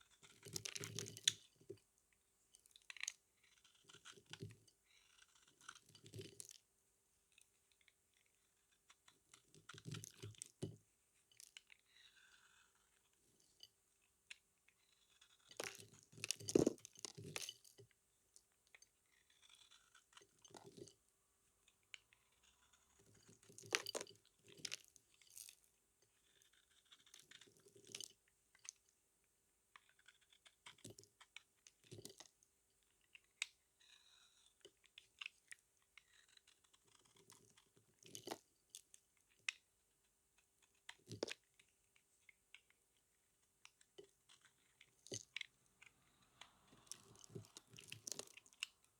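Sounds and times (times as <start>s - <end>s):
blade cutting soap: 0.0s - 1.8s, 2.6s - 6.6s, 11.4s - 28.1s, 29.7s - 38.5s, 40.4s - 42.8s.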